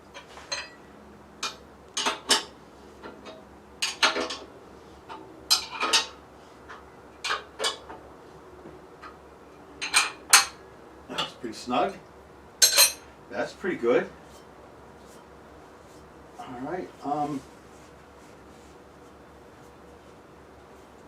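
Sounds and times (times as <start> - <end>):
metal tool clinking on bolts: 0.2 - 0.8, 12.6 - 13.0.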